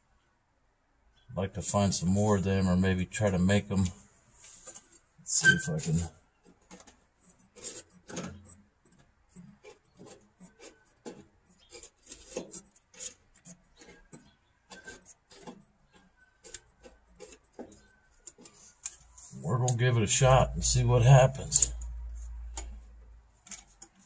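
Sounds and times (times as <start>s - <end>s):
small parts clicking and scraping: 4.4s - 19.8s, 21.1s - 24.0s.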